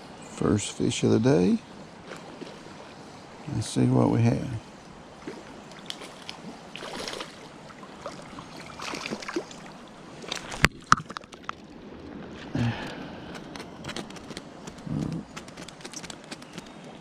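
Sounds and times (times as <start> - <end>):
water splashing from fish: 5.2 - 11.8.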